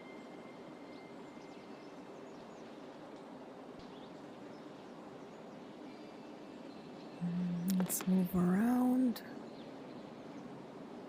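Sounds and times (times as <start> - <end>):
low background hiss: 0.0 - 11.0
faint bird chirps: 3.8 - 10.7.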